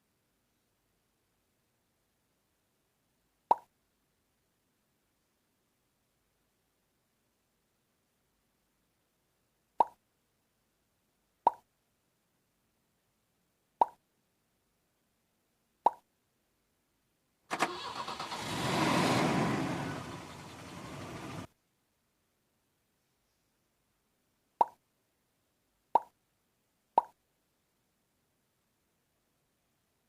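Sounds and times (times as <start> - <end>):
engine-starting sound effect: 17.5 - 21.5.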